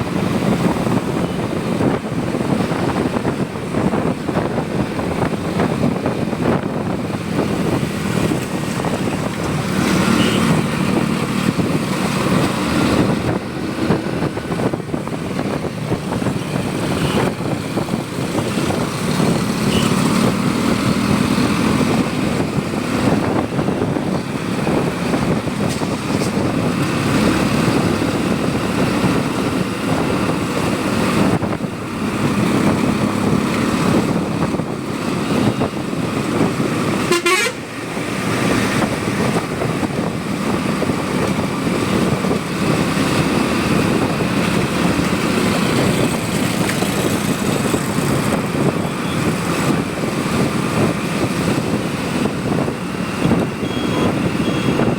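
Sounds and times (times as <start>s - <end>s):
wind and road noise: 0.0s - 54.9s
vehicle horns: 9.9s - 10.7s, 19.6s - 20.1s, 36.9s - 37.8s, 53.6s - 54.9s
motorcycle engine running: 38.8s - 54.9s.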